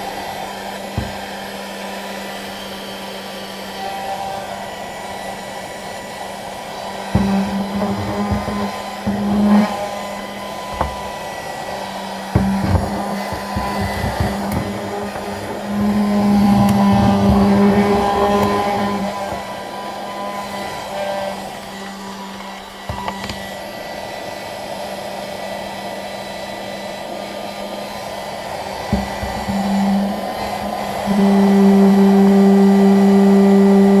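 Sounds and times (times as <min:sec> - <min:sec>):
low hum: 0:00.0 - 0:23.5
car vacuum cleaner whine: 0:00.0 - 0:34.0
knock: 0:01.0 - 0:01.2, 0:07.2 - 0:09.6, 0:12.4 - 0:19.4.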